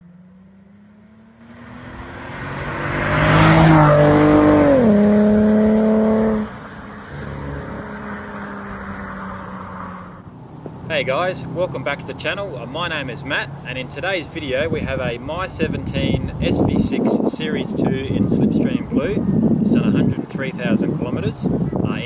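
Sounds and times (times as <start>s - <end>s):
car driving past: 0.0s - 13.8s.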